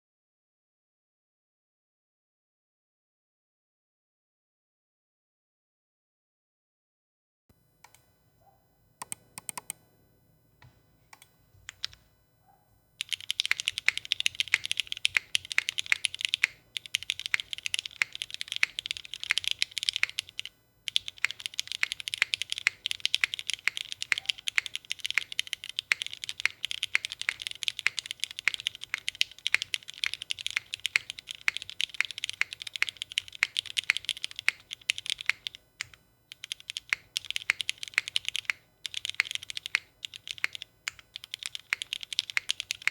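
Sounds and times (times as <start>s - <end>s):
mechanical keyboard typing: 9.0s - 9.8s, 11.7s - 12.0s, 13.0s - 42.9s.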